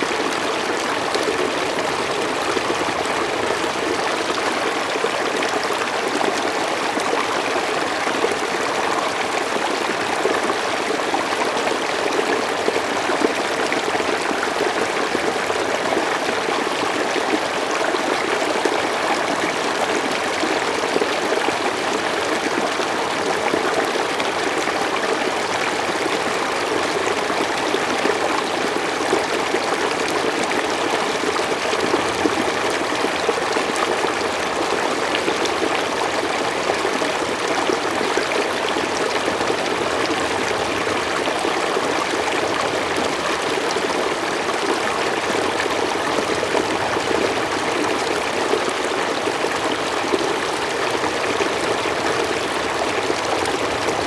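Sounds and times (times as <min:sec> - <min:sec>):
stream flowing over rocks: 0:00.0 - 0:54.0.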